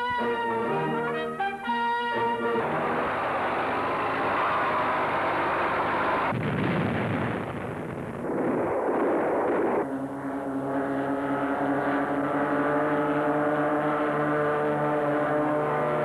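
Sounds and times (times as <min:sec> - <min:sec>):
crashing explosion noise: 0:05.8 - 0:09.8.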